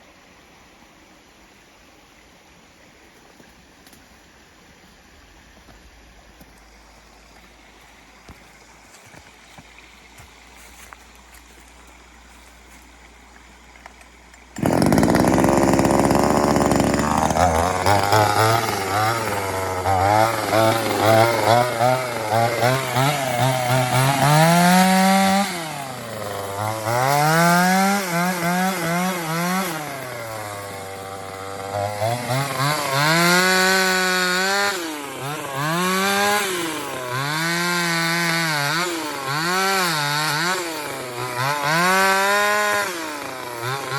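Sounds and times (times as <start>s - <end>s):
chainsaw engine revving: 14.5s - 43.9s.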